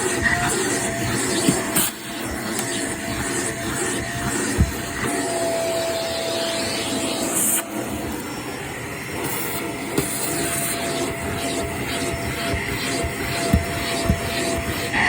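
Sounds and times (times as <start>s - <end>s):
vacuum cleaner whining: 0.0s - 15.0s.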